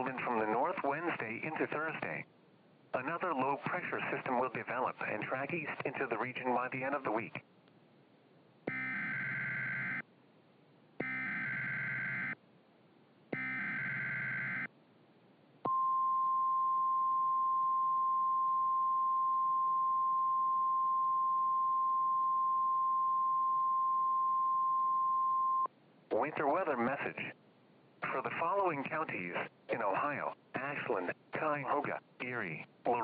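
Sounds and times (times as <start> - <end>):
steady warning alarm tone: 8.7 - 10.0, 11.0 - 12.4, 13.4 - 14.7.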